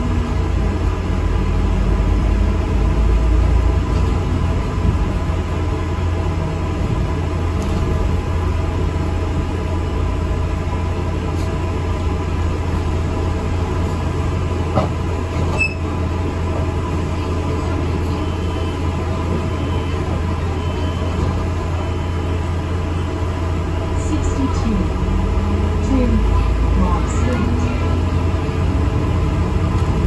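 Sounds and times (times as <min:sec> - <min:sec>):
bus engine drone: 0:00.0 - 0:30.0
road rumble: 0:00.0 - 0:30.0.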